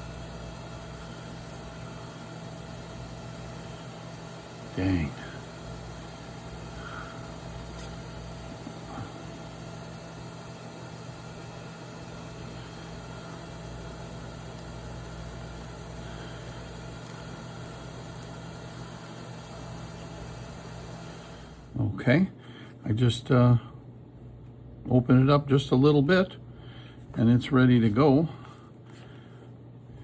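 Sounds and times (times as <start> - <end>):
low electrical hum: 0.0 - 30.0.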